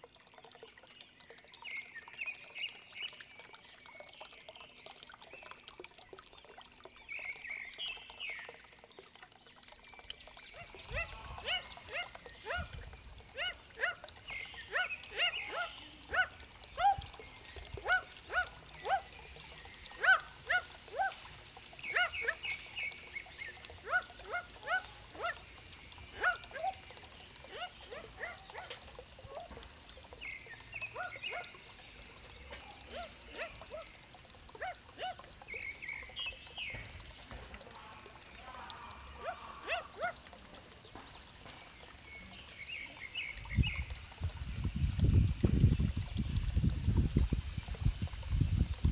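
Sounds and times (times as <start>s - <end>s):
bird barking calls: 10.4s - 36.9s, 37.9s - 41.2s.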